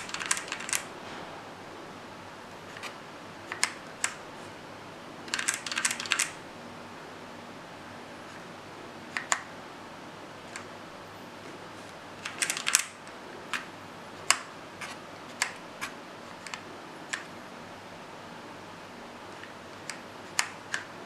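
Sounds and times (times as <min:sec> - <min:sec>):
mechanical keyboard key clicks: 0:05.3 - 0:06.4, 0:12.2 - 0:12.9.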